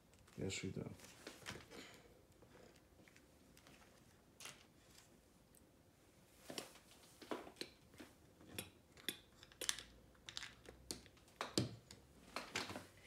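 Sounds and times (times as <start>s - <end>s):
plastic bricks clicking: 9.0s - 12.7s.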